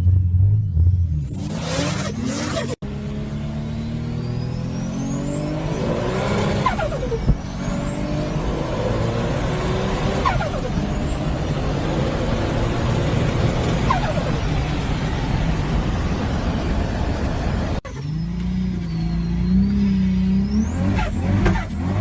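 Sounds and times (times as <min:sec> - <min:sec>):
turbocharged car engine: 0:00.0 - 0:22.0.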